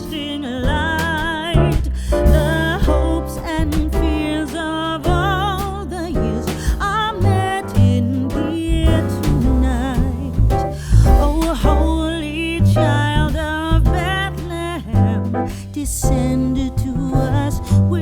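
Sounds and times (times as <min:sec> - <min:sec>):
song with singing voice: 0:00.0 - 0:18.0.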